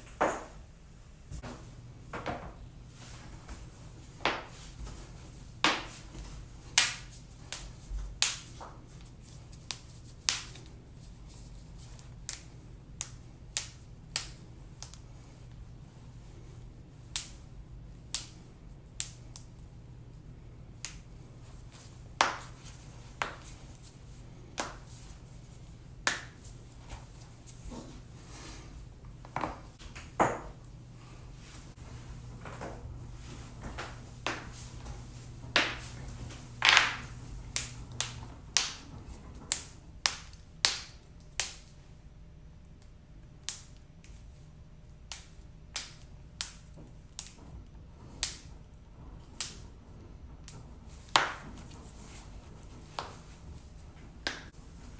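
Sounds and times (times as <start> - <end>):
faint steady low hum: 0.0 - 54.9.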